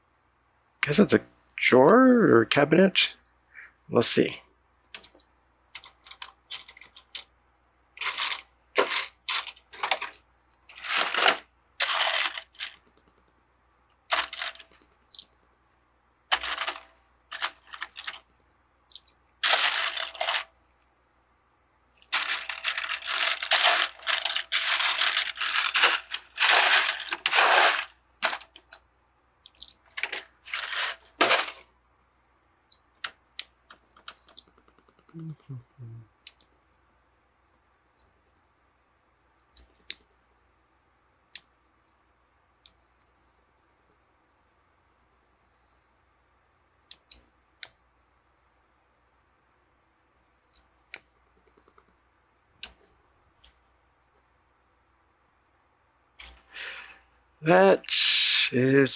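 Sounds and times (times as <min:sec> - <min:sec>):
plastic pieces clattering: 0:05.0 - 0:07.3, 0:08.0 - 0:13.2, 0:14.1 - 0:15.3, 0:16.3 - 0:18.2, 0:19.0 - 0:20.5, 0:22.0 - 0:28.8, 0:29.5 - 0:31.7.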